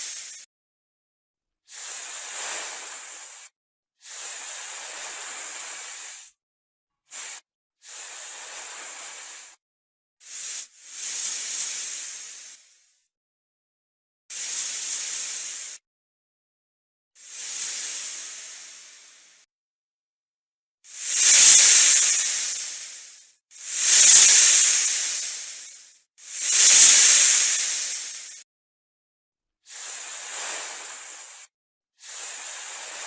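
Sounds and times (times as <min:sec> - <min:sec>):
snake hissing: 0:00.0 - 0:00.5, 0:01.7 - 0:06.3, 0:07.1 - 0:09.6, 0:10.2 - 0:12.8, 0:14.3 - 0:15.8, 0:17.2 - 0:19.4, 0:20.9 - 0:28.4, 0:29.7 - 0:33.0.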